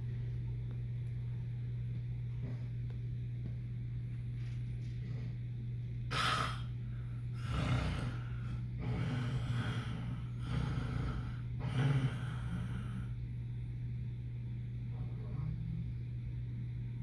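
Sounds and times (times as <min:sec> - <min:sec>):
steady low hum: 0:00.0 - 0:17.0
person snoring: 0:06.1 - 0:06.7, 0:07.3 - 0:13.2.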